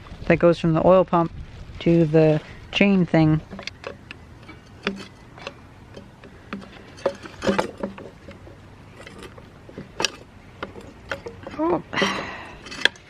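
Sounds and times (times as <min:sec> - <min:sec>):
hand tools clicking and knocking: 0:03.4 - 0:13.0.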